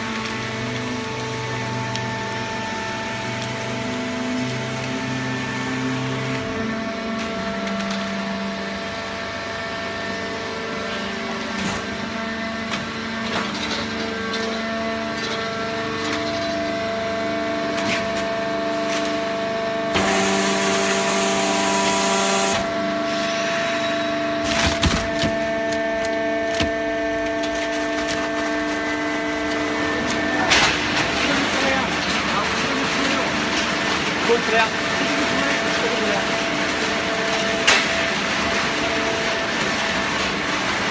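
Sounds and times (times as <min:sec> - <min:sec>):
baling press machine hum: 0:00.0 - 0:40.9
cardboard crackling and knocking: 0:24.4 - 0:28.8.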